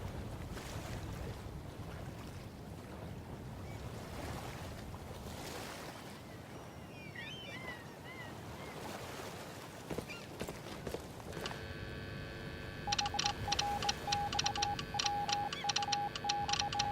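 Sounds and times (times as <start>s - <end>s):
sharp clicks: 11.4s - 11.6s, 12.9s - 16.9s.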